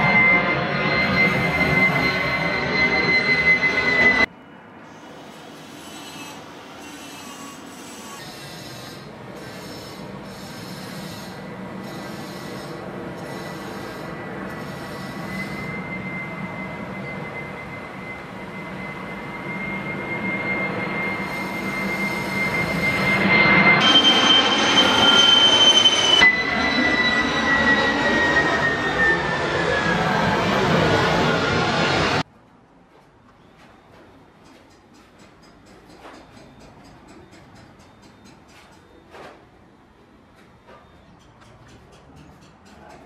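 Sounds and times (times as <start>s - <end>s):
jet engines whining and rumbling: 0.0s - 32.3s.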